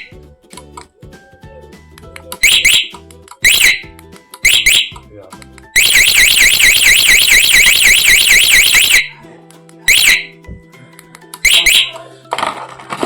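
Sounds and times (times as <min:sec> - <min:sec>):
motorcycle alarm siren warble: 0:02.4 - 0:02.9, 0:03.5 - 0:03.8, 0:04.5 - 0:05.0, 0:05.8 - 0:09.1, 0:09.9 - 0:10.3, 0:11.5 - 0:12.0
alarm chirps: 0:02.4 - 0:03.8, 0:04.5 - 0:05.0, 0:05.8 - 0:09.1, 0:09.9 - 0:10.3, 0:11.5 - 0:11.9.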